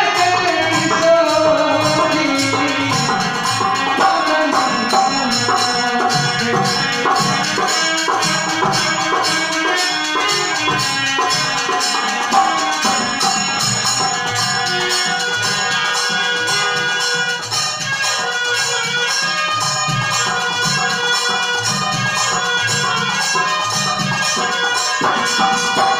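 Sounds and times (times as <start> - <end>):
folk music accompaniment: 0.0 - 25.9
jingling percussion: 0.0 - 25.9.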